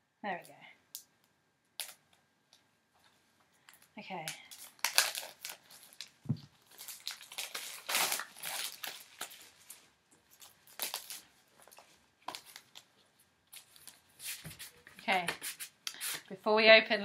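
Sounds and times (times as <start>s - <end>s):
plastic wrap crinkling: 1.8s - 14.8s.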